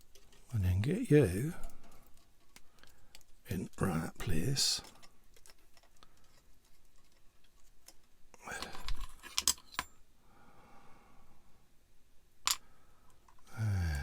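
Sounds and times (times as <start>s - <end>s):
plastic parts clicking and tapping: 4.8s - 9.9s.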